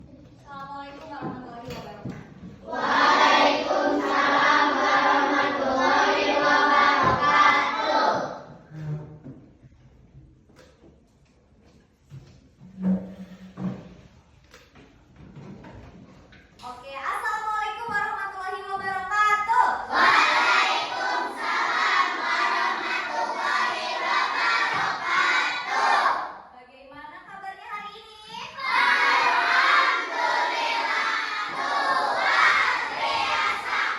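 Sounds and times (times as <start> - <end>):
group singing in unison: 2.6 - 8.4, 19.9 - 26.4, 28.6 - 33.9.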